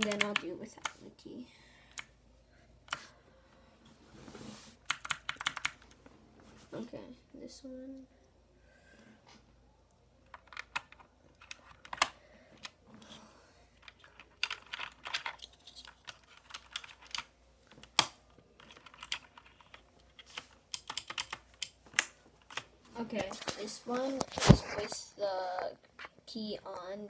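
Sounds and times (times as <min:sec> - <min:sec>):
mechanical keyboard switches clacking: 0:00.0 - 0:01.0, 0:20.7 - 0:22.6.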